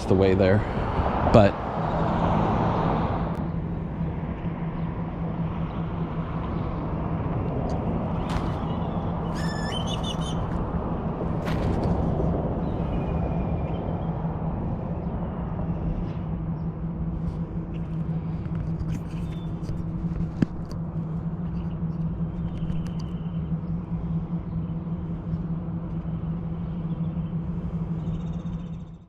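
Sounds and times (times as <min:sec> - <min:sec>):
low mechanical hum: 0:00.0 - 0:29.0
faint bird chirps: 0:08.2 - 0:10.5, 0:26.1 - 0:29.0.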